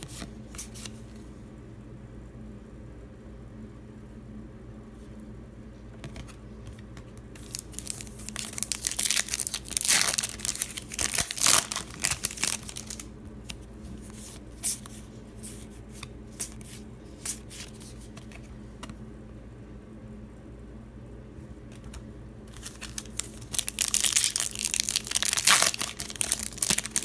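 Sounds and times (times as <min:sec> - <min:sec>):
wrapper tearing and crinkling: 0:07.4 - 0:13.1, 0:22.6 - 0:27.0.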